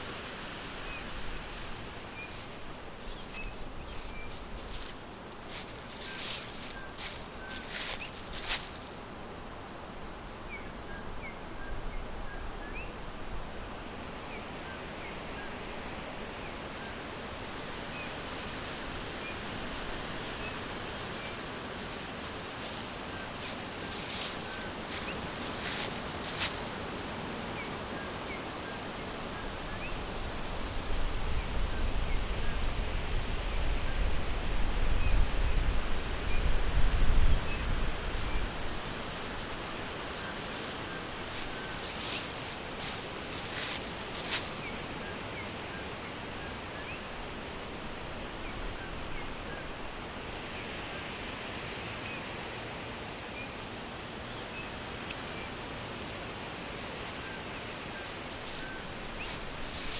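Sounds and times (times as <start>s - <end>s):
steady rushing hiss: 0.0s - 9.3s, 16.2s - 27.3s, 37.2s - 45.0s, 52.5s - 59.9s
small birds chirping faintly: 0.6s - 9.3s, 14.3s - 27.7s, 37.4s - 47.7s, 52.0s - 59.9s
rustling: 0.7s - 9.3s, 18.9s - 27.0s, 37.4s - 45.0s, 54.2s - 59.9s
wind rumble on microphone: 29.3s - 45.1s.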